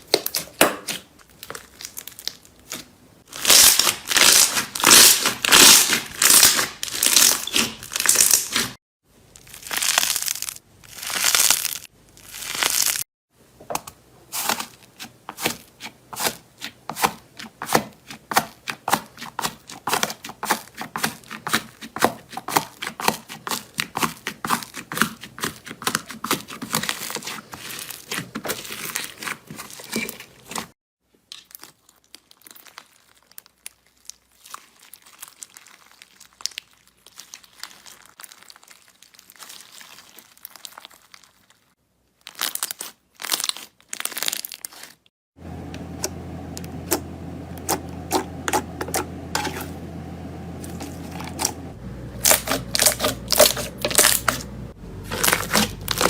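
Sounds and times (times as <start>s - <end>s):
slime crackling and popping: 0.0s - 8.7s, 9.4s - 13.0s, 31.2s - 45.1s.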